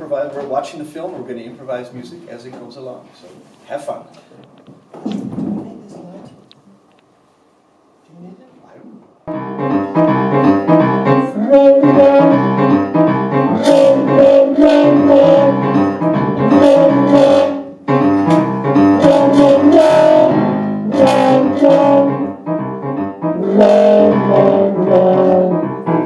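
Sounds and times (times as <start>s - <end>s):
improvised piano music: 9.3s - 26.0s.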